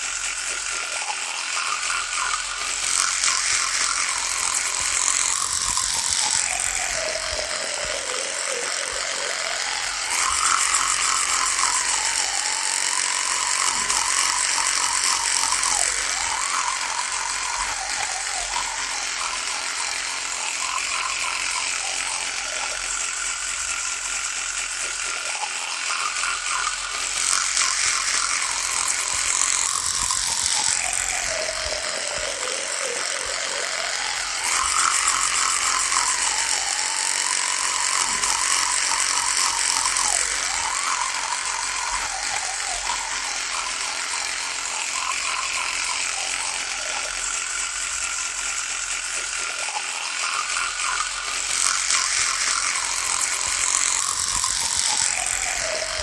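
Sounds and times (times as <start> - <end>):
electric toothbrush buzzing: 0.0 - 56.0.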